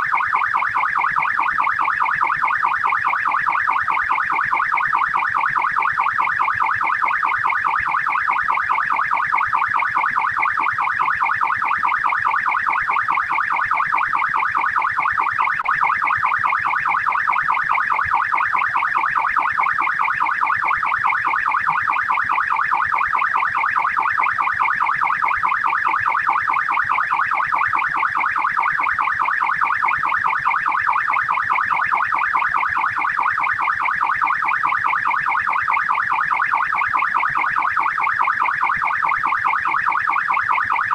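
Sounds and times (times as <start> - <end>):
police siren yelping: 0.0 - 40.9.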